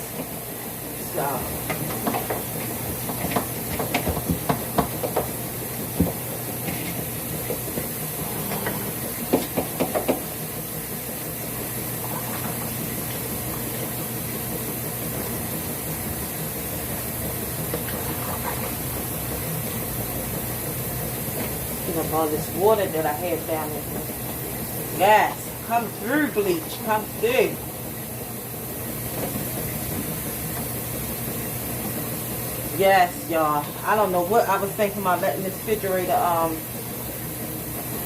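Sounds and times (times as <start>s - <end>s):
items knocking and clattering: 1.7s - 7.9s.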